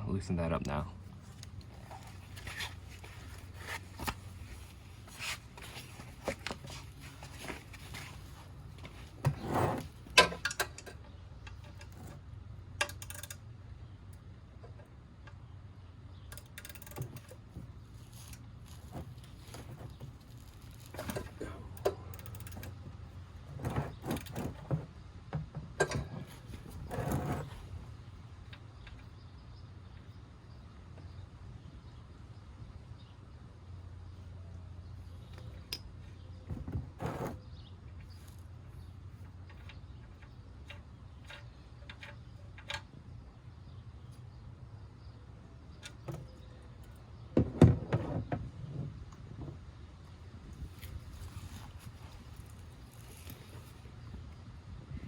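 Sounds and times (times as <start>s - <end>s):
hand tools and metal parts clattering: 1.2s - 13.5s, 16.2s - 29.2s, 35.2s - 43.1s.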